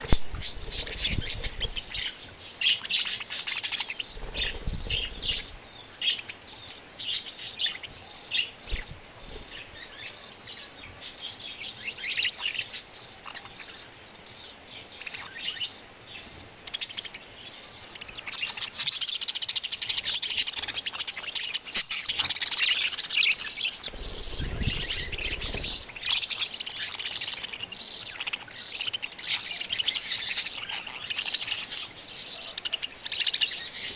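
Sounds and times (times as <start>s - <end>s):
baby budgerigars chirping: 0.0s - 33.9s
low rumbles: 23.8s - 26.0s.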